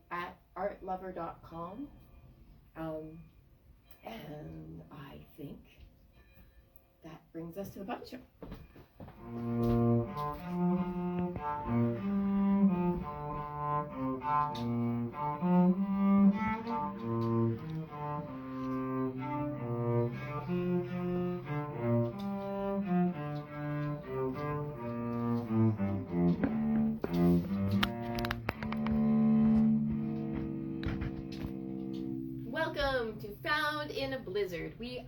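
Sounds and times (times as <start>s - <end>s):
cello playing slow bowed melody: 9.0s - 33.9s.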